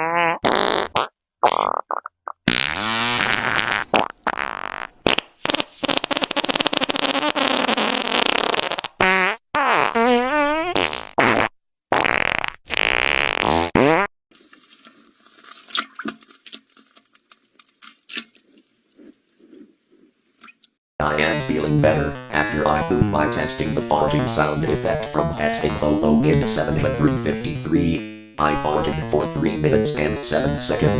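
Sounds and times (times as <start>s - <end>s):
long loud farts: 0.0s - 14.1s.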